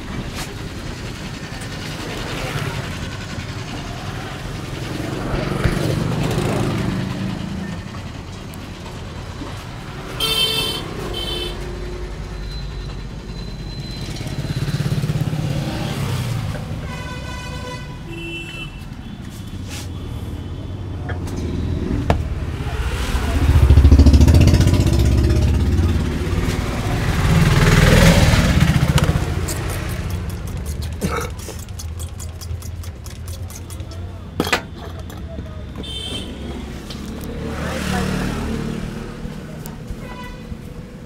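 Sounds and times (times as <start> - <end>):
road traffic passing: 0.0 - 41.0
vehicle horn toots: 10.2 - 11.6, 16.8 - 20.0, 35.8 - 36.7, 40.0 - 40.6.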